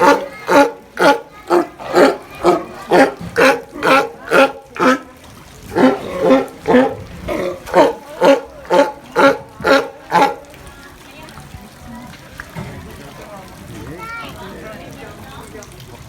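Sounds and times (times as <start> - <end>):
sea lion barking: 0.0 - 10.6.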